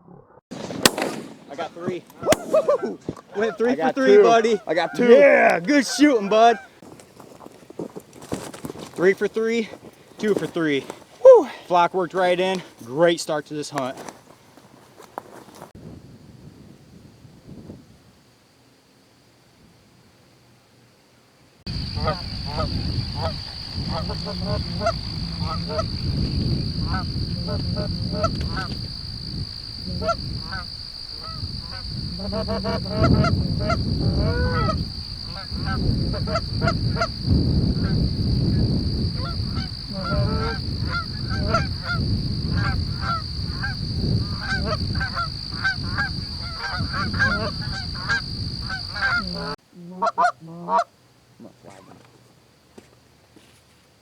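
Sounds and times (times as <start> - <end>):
geese honking: 1.5 - 6.8, 21.7 - 37.2, 39.1 - 50.9.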